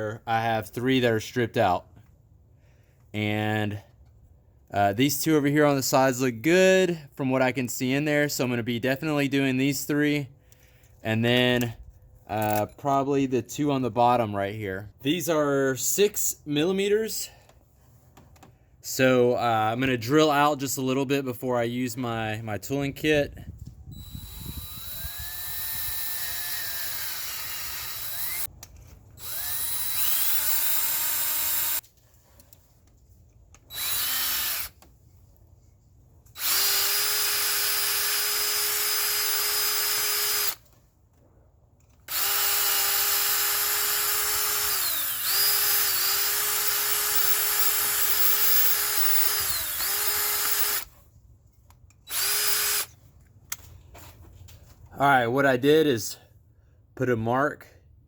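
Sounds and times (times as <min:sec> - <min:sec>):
power drill motor whine: 0:23.9 - 0:28.5, 0:29.2 - 0:31.8, 0:33.7 - 0:34.8, 0:36.4 - 0:40.6, 0:42.1 - 0:50.9, 0:52.1 - 0:52.9.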